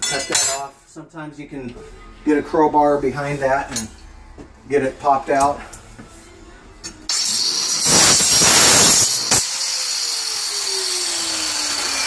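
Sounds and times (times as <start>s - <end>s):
power saw cutting nail: 7.1s - 12.0s.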